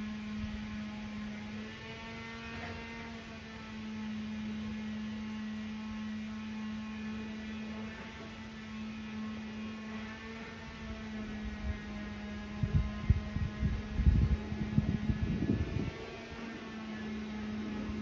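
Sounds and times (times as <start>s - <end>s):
airplane cabin droning hum: 10.7s - 18.0s.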